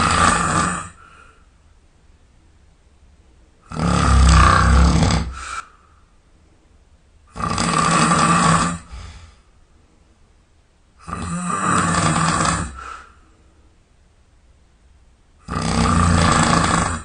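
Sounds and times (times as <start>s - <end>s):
man snoring loudly: 0.0s - 1.1s, 3.6s - 5.6s, 7.3s - 9.0s, 11.0s - 13.1s, 15.4s - 17.0s
quiet breathing: 0.0s - 2.6s, 3.4s - 10.3s, 11.0s - 14.0s.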